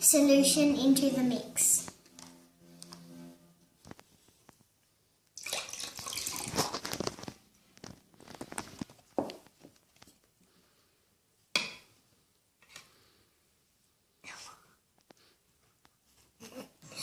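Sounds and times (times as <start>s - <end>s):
drips: 5.4s - 6.6s
liquid splashing pour: 5.4s - 7.1s.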